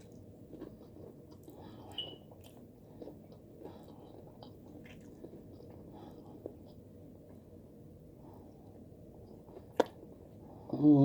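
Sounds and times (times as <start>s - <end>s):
close-up chewing: 0.0s - 7.6s.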